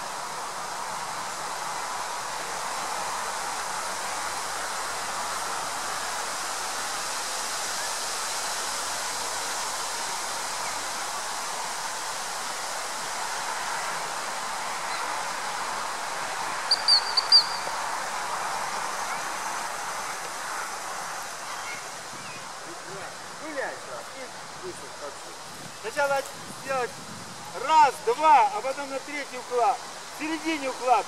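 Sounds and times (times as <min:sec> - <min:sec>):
steady background hiss: 0:00.0 - 0:31.0
dog-training whistle blasts: 0:16.7 - 0:17.7.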